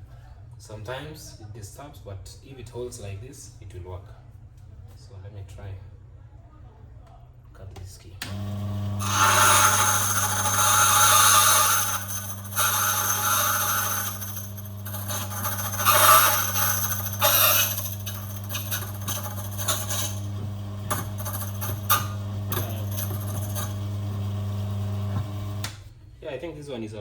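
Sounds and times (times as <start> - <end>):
cutter grinding key blank: 8.3 - 24.2
machine motor humming: 8.3 - 25.8.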